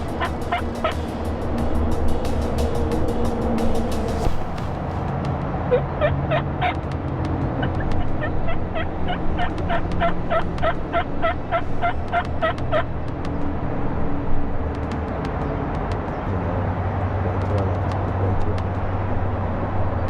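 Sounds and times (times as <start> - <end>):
low rumble: 0.0 - 14.8
turkey yelps: 5.7 - 6.8, 7.6 - 12.8.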